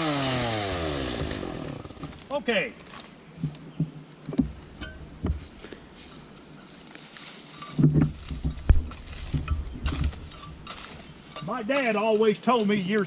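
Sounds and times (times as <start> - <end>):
knocks and thumps: 3.4 - 5.6, 7.7 - 11.5.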